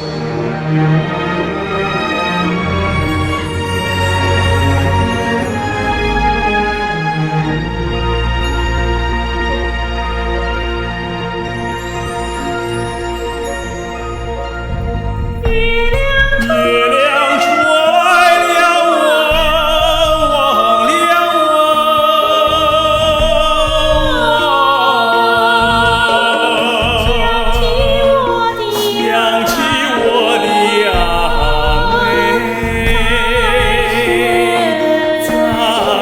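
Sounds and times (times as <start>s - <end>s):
sustained instrumental accompaniment: 0.0s - 36.0s
person singing operatically: 15.4s - 36.0s.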